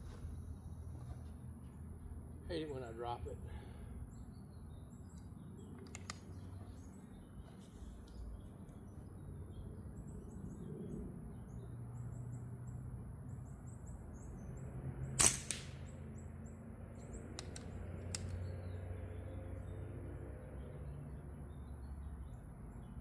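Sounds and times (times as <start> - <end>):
birds chirping: 0.0 - 23.0
airgun shot: 15.2 - 15.9.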